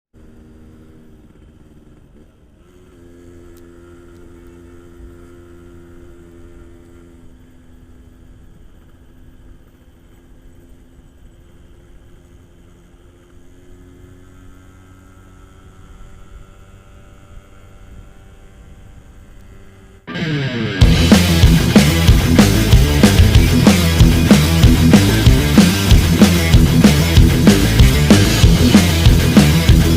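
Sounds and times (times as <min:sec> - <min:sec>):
two-stroke motorcycle engine running: 0:00.2 - 0:29.9.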